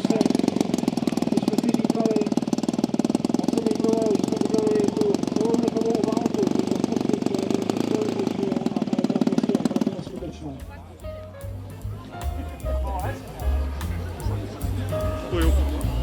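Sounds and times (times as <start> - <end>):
model airplane engine idling: 0.0 - 11.1, 11.8 - 16.0.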